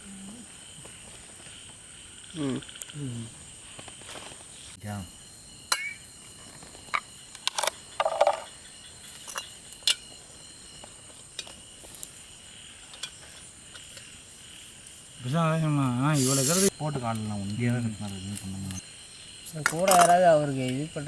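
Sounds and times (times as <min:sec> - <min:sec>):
high-pitched insect drone: 0:04.5 - 0:21.0.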